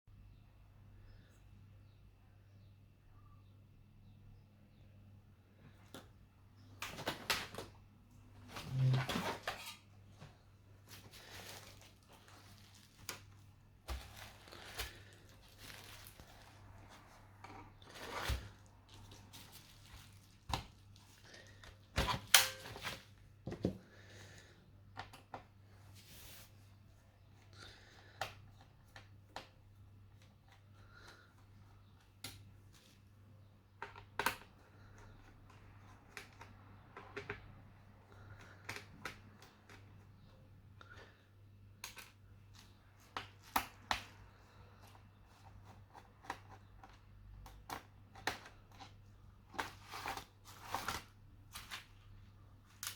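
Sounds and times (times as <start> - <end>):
soft rustling: 8.3 - 21.6.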